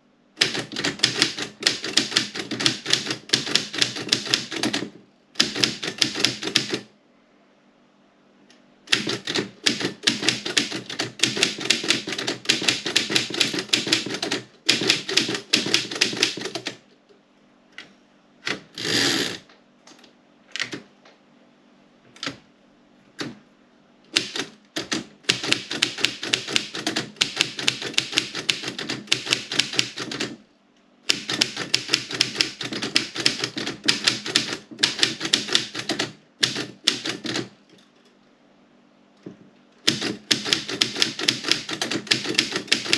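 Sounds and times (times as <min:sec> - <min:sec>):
typewriter keystrokes: 0:00.4 - 0:06.9, 0:08.9 - 0:16.8, 0:24.1 - 0:30.4, 0:31.1 - 0:37.6, 0:39.8 - 0:42.9.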